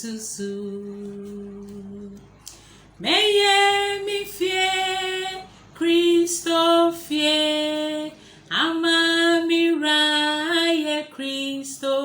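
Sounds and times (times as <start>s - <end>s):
women singing a church chorus: 3.0s - 12.0s.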